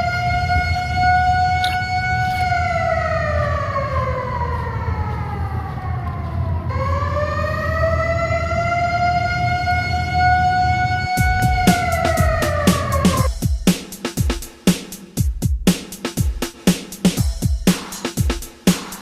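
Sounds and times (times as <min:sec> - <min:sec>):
low rumble: 0:00.0 - 0:13.3
siren winding down and up: 0:00.0 - 0:13.3.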